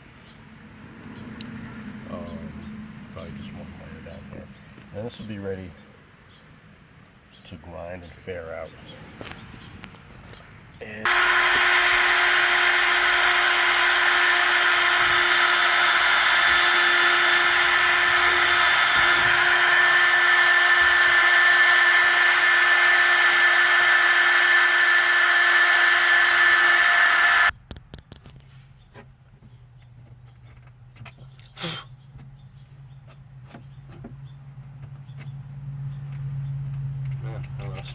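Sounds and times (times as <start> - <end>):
power tool whining: 11.0 - 27.5.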